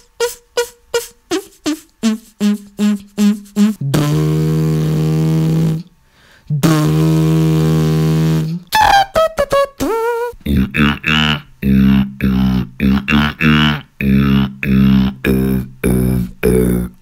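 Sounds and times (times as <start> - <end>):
beatbox pitched pops: 0.0 - 5.8, 6.6 - 11.4
beatbox buzzing bass tones: 0.0 - 5.9, 6.5 - 17.0.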